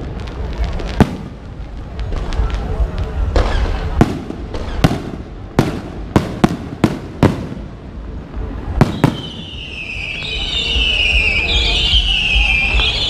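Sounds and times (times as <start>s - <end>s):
fireworks bangs with echo: 0.0s - 13.0s
high whistling tone: 8.9s - 13.0s.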